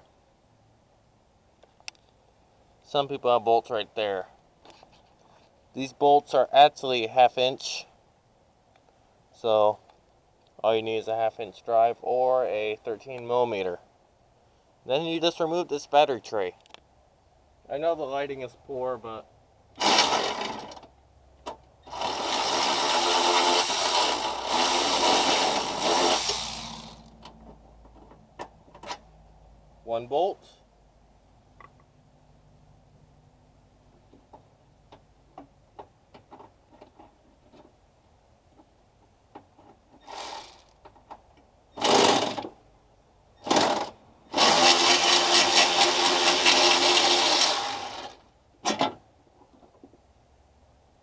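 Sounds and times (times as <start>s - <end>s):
power tool spinning socket: 21.9s - 27.1s, 40.0s - 40.8s, 43.5s - 48.2s.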